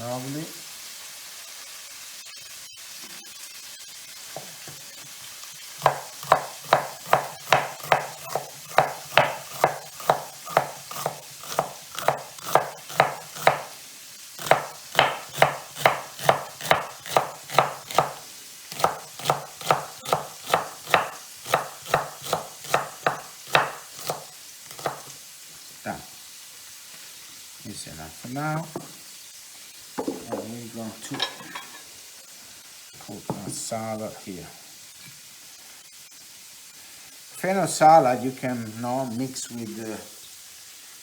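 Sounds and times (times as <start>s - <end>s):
faint sizzle from frying pan: 0.0s - 41.0s
knife chopping on cutting board: 5.8s - 13.7s, 14.4s - 25.2s.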